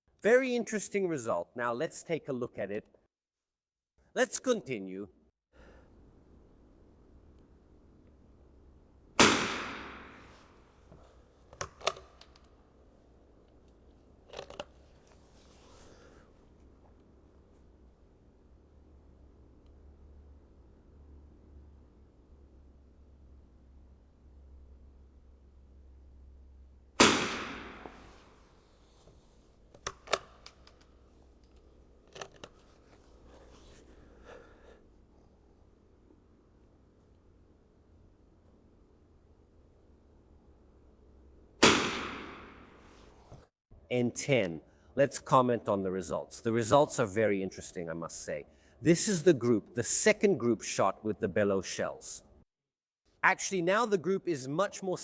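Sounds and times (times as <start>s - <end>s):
rifle shot with echo: 9.2s - 10.3s, 27.0s - 28.0s, 41.6s - 42.7s.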